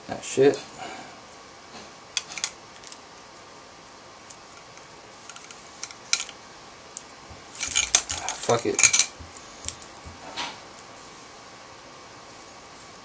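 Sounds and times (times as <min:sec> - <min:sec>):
metal gearbox parts clicking: 0:07.6 - 0:09.2.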